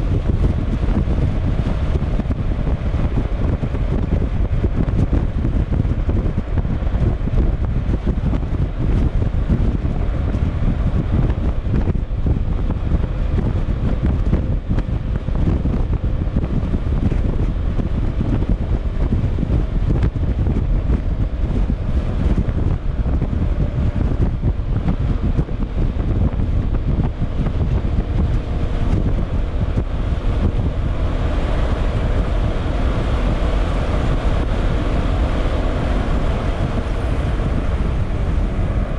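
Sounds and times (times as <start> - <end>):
wind buffeting on microphone: 0.0 - 38.9
scooter engine running: 8.8 - 38.9.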